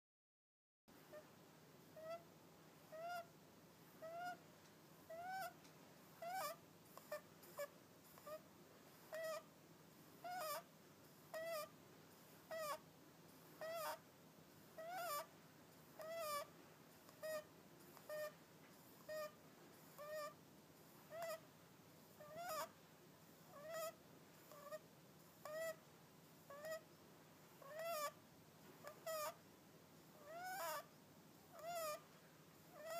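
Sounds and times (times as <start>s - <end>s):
rabbit squeaky whistling breaths: 4.0s - 4.4s, 5.1s - 5.6s, 6.2s - 8.4s, 9.0s - 9.5s, 10.2s - 10.7s, 11.3s - 11.7s, 12.4s - 12.8s, 13.6s - 14.0s, 14.8s - 15.3s, 16.0s - 16.5s, 17.1s - 18.4s, 19.0s - 20.4s, 21.0s - 21.4s, 22.2s - 22.7s, 23.5s - 24.8s, 25.4s - 25.8s, 26.5s - 26.9s, 27.6s - 28.2s, 28.8s - 29.4s, 30.2s - 30.9s, 31.5s - 32.0s.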